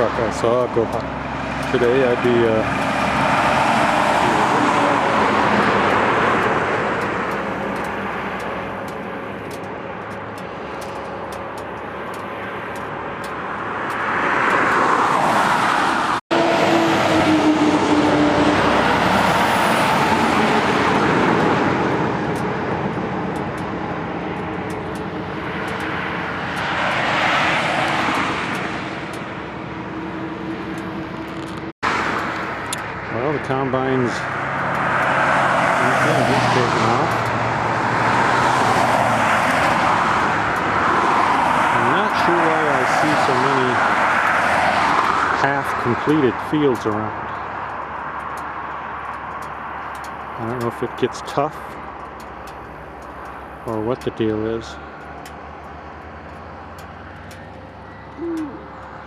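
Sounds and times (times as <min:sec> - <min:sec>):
rushing vehicle road noise: 0:00.0 - 0:59.0
faint engine hum: 0:49.4 - 0:59.0.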